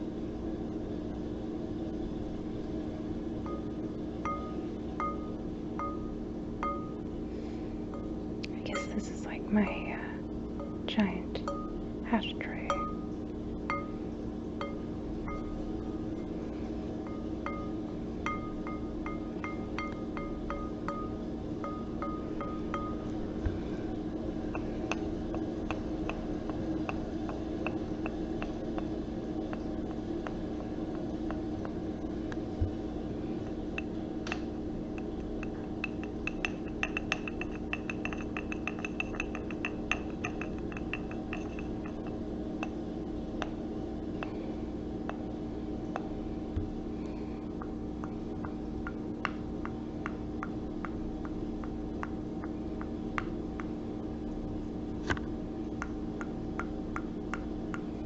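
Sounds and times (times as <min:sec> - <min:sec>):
steady low hum: 0:00.0 - 0:58.0
faint glassy ring: 0:03.4 - 0:07.1, 0:07.9 - 0:09.2, 0:10.6 - 0:14.0, 0:14.6 - 0:16.3, 0:17.0 - 0:23.2, 0:35.0 - 0:42.8
small objects clicking and tapping: 0:33.5 - 0:42.8.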